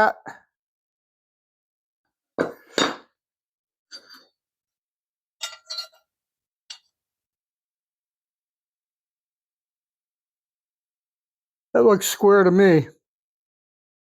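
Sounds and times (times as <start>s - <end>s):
metal squares clinking: 5.4s - 6.0s.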